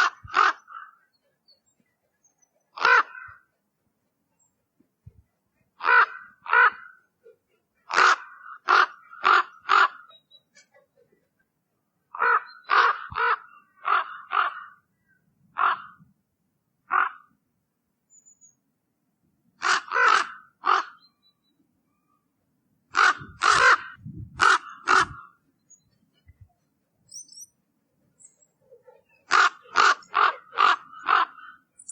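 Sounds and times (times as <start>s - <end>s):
raven calling: 0.0s - 1.1s, 2.7s - 3.5s, 5.8s - 7.1s, 7.8s - 10.4s, 12.1s - 14.8s, 15.5s - 16.0s, 16.9s - 17.3s, 19.6s - 21.1s, 22.9s - 25.4s, 28.2s - 31.9s.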